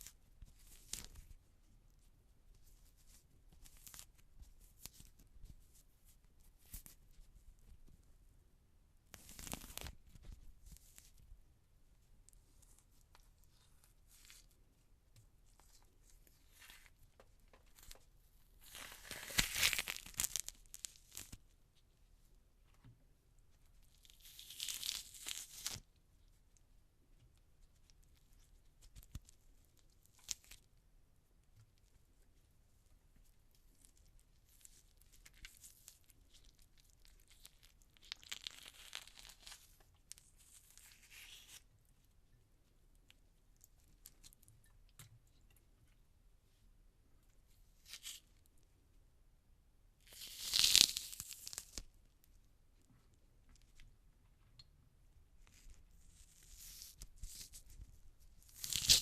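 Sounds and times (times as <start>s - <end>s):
orange peel tearing: 18.6s - 21.4s, 24.0s - 25.8s, 50.1s - 51.8s, 58.4s - 59.0s.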